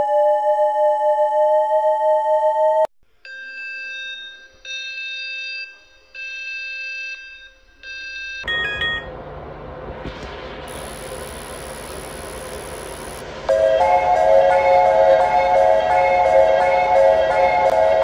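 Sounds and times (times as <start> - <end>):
two-tone alarm: 0.0 - 9.1, 10.7 - 18.0
loud steady hiss and rumble: 9.1 - 13.5
electronic alert tones: 10.7 - 13.3
descending run of notes: 12.8 - 18.0.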